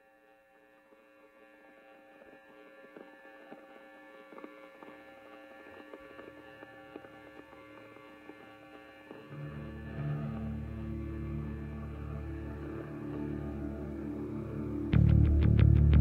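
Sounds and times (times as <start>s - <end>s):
droning chord music: 3.2s - 16.0s.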